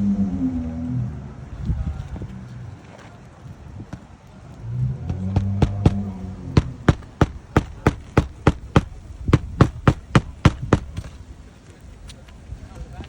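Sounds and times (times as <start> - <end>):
hammer striking: 5.4 - 11.1.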